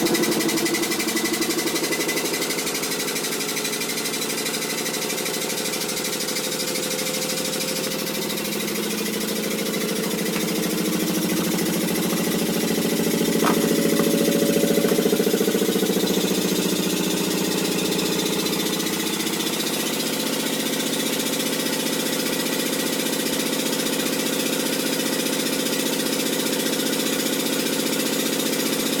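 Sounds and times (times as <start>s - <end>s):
machine fast-pulsing hum: 5.3s - 21.8s.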